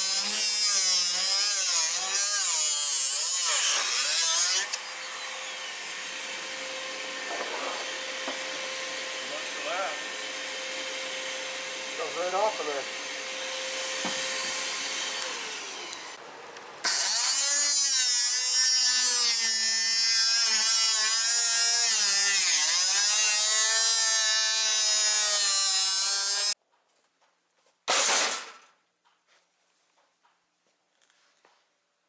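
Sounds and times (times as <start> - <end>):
power tool whining under load: 3.4 - 16.2.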